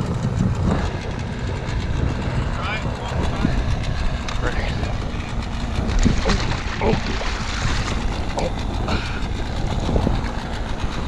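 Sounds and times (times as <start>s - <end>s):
water lapping: 0.0s - 11.0s
wind buffeting microphone: 0.0s - 11.0s.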